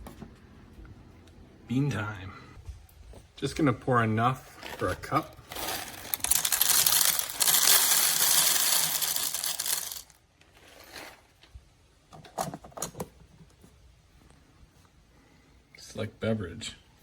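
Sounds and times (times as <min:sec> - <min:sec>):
coffee beans pouring rattle: 0:04.8 - 0:11.2.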